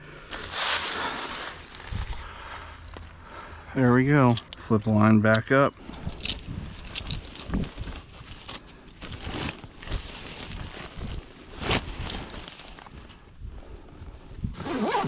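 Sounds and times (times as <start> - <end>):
rope rustling against tree trunk: 0.2 - 3.4.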